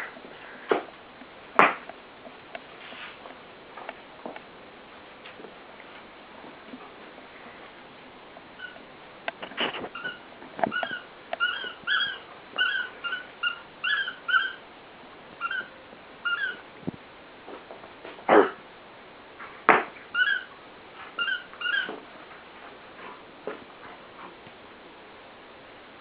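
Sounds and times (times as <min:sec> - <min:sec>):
dog whining: 0:08.6 - 0:08.8, 0:09.9 - 0:14.6, 0:15.4 - 0:16.6, 0:20.1 - 0:20.5, 0:21.2 - 0:22.0.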